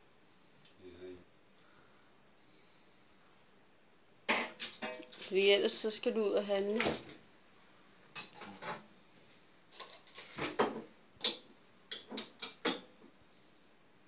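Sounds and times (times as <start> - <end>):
dishes and cutlery clattering: 8.1 - 8.8.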